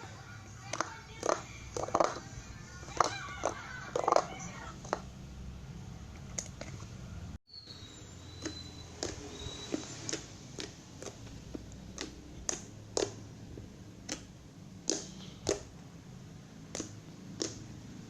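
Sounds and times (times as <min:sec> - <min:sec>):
slime clicking pops: 0:10.1 - 0:13.2, 0:14.0 - 0:15.7, 0:16.7 - 0:17.6.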